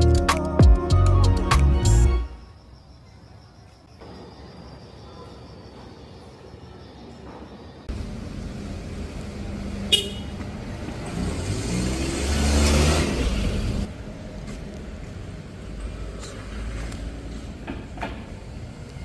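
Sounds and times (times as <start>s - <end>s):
motor vehicle passing: 8.0s - 15.3s.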